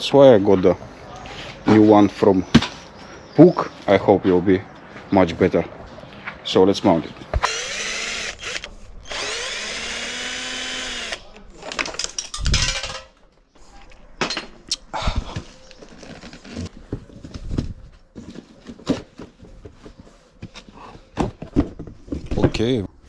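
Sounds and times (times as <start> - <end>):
electric drill whining: 7.4 - 11.3.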